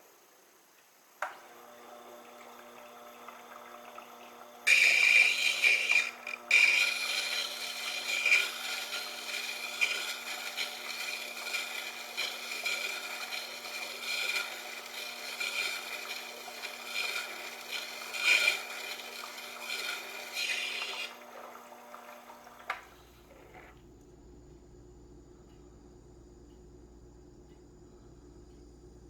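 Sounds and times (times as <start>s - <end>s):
motor hum: 1.2s - 29.0s
drill bit scraping on grindstone: 4.6s - 21.6s.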